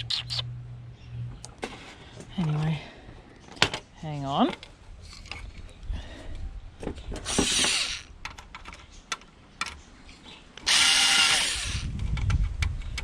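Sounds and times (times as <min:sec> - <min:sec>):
power screwdriver running: 0:07.3 - 0:08.1, 0:10.6 - 0:11.9.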